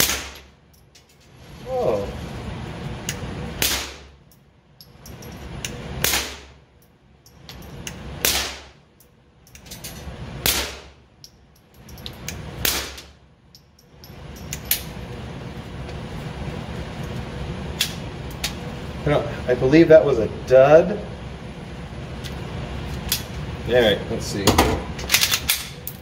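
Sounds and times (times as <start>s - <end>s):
gunshots: 8.2s - 8.8s, 10.4s - 10.9s.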